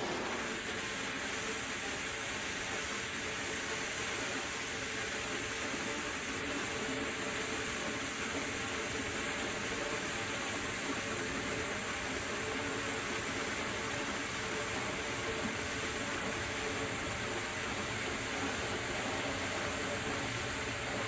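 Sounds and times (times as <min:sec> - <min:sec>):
floodwater rushing: 0:04.4 - 0:21.0.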